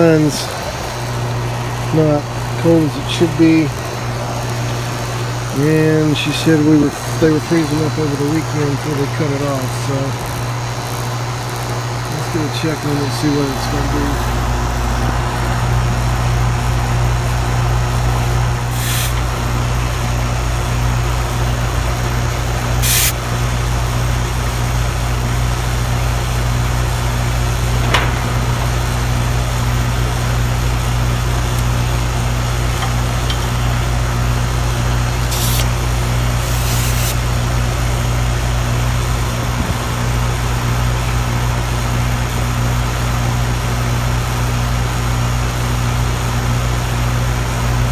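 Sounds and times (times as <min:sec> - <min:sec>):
air conditioner humming: 0:00.0 - 0:47.9
short hisses: 0:18.7 - 0:19.2, 0:22.8 - 0:23.2, 0:35.3 - 0:35.8, 0:36.4 - 0:37.3.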